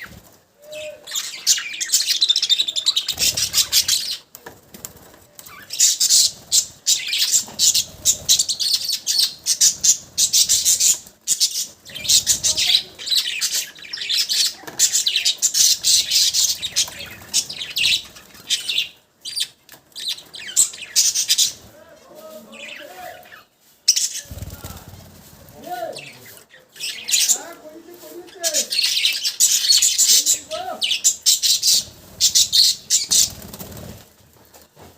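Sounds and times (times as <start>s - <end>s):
budgerigars chattering: 5.5s - 19.4s.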